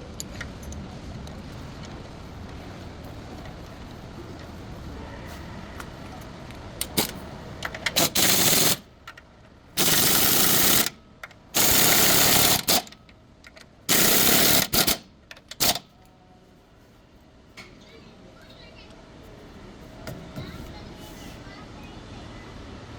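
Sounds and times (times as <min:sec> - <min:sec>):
impact wrench running: 0:06.8 - 0:08.9, 0:09.8 - 0:13.0, 0:13.9 - 0:15.8.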